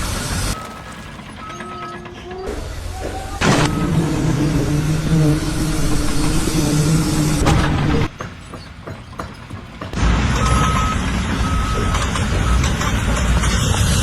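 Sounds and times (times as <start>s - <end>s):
engine humming: 0.0s - 14.0s
scattered clicks and knocks: 7.6s - 14.0s.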